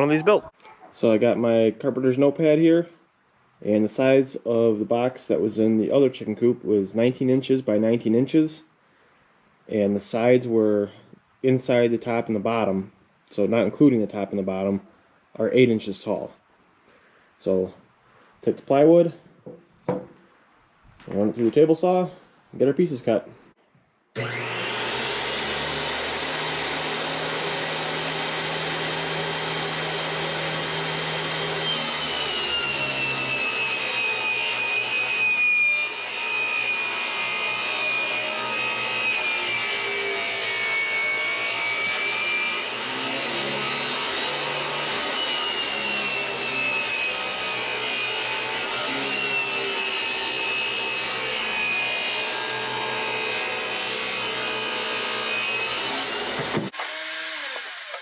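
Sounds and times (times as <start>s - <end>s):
table saw cutting plywood: 24.2s - 58.0s.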